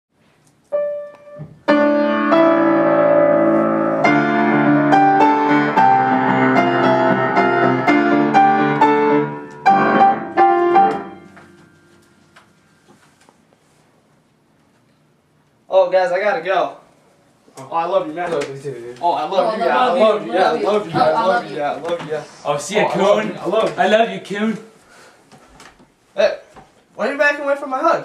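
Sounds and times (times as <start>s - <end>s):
piano music: 0.7s - 12.3s.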